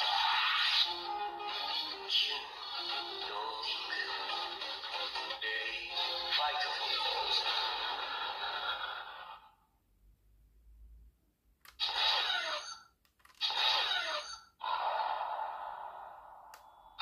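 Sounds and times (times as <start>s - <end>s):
toy speaker music: 0.8s - 7.3s, 12.1s - 12.9s.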